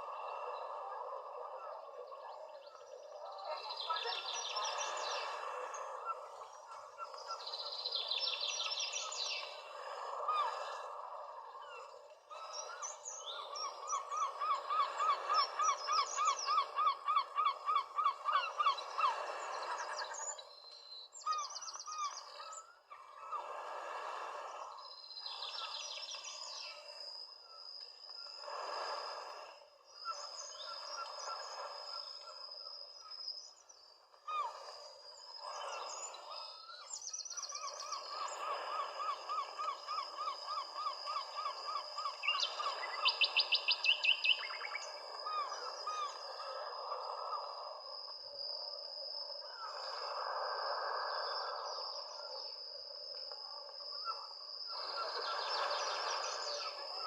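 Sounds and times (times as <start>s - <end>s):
birds chirping and trilling: 1.6s - 23.4s, 33.3s - 46.4s.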